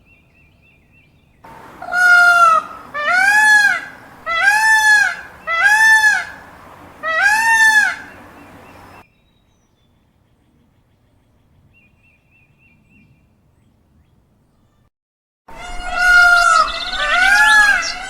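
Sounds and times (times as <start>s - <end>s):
peacock calling: 1.5s - 9.0s, 15.5s - 18.0s
faint high chirping: 15.6s - 18.0s.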